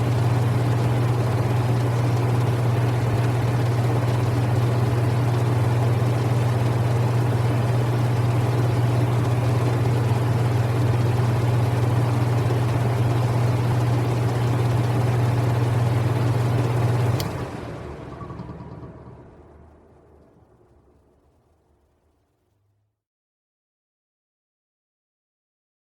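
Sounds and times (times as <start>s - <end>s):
air conditioner humming: 0.0s - 21.1s
air conditioner fan rushing: 0.0s - 21.6s
air conditioner switch click: 17.1s - 17.4s.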